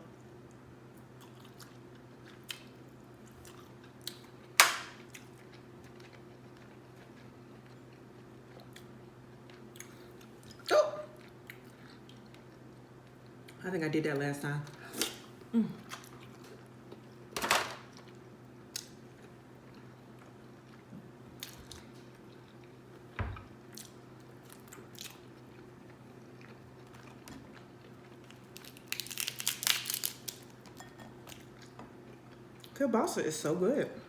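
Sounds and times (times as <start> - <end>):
chewing and smacking: 1.0 - 13.6, 17.9 - 32.8
crunching bites of food: 23.7 - 30.6.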